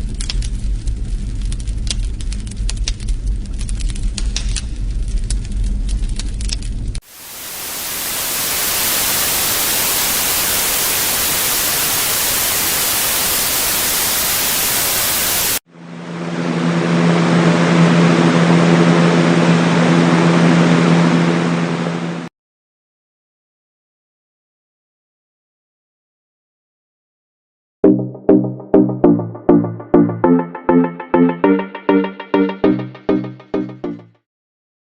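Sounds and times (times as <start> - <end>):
low rumble with faint crackles: 0.0 - 7.0
white noise hiss: 7.1 - 15.6.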